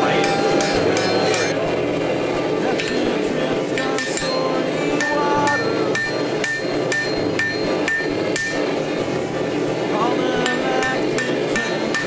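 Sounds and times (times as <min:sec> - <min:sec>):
hammer striking steel on anvil: 0:00.0 - 0:01.6, 0:03.7 - 0:08.8, 0:10.4 - 0:12.0
steady background noise: 0:00.0 - 0:12.0.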